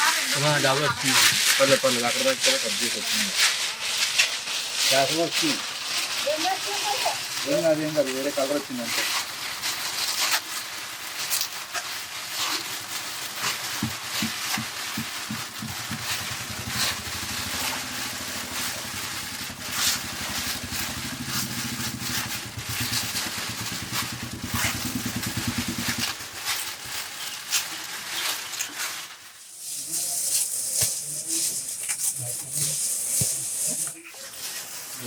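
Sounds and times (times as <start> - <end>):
constant hiss: 0.0 - 35.0
small engine running: 11.4 - 27.3.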